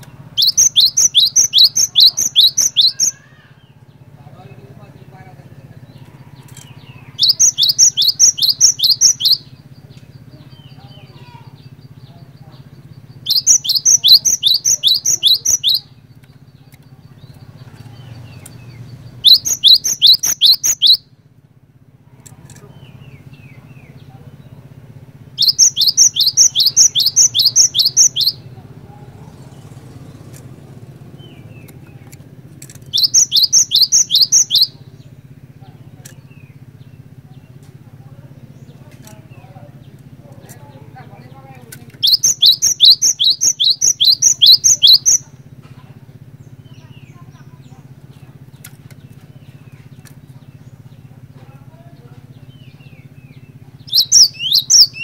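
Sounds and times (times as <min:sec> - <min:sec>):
bird singing repeated high notes: 0:00.4 - 0:03.2, 0:07.2 - 0:09.5, 0:13.3 - 0:15.8, 0:19.2 - 0:21.0, 0:25.4 - 0:28.4, 0:32.9 - 0:34.8, 0:42.0 - 0:45.2, 0:53.9 - 0:55.0.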